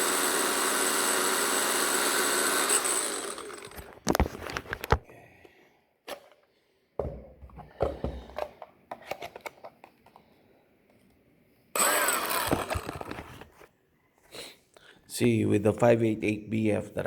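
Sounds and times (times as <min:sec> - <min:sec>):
angle grinder running: 0:00.0 - 0:04.2, 0:11.8 - 0:13.4
angle grinder being handled: 0:00.1 - 0:05.0, 0:07.5 - 0:10.2, 0:11.8 - 0:13.7.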